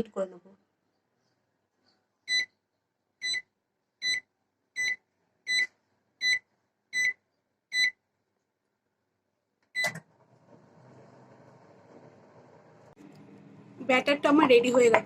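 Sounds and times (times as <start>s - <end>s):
microwave keypad beeps: 2.3s - 2.6s, 3.2s - 8.0s, 9.8s - 10.0s
oven humming: 9.8s - 15.0s.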